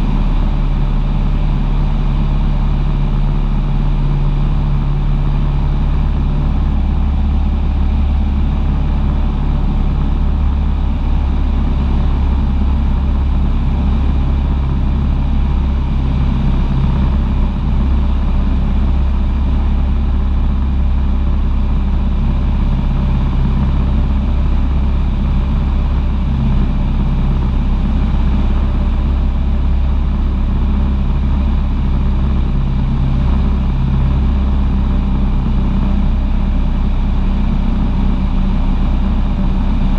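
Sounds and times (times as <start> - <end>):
small airplane engine droning: 0.0 - 39.9.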